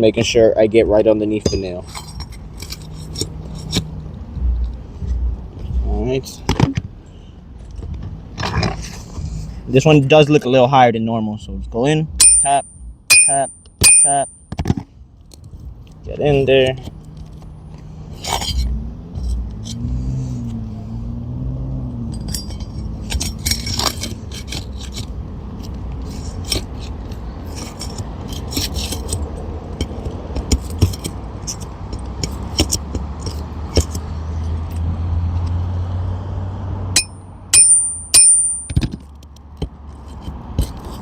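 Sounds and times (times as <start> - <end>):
low vehicle rumble: 0.0 - 13.1, 14.8 - 41.0
ringing metal taps: 1.3 - 3.8, 12.2 - 14.7, 37.0 - 39.1.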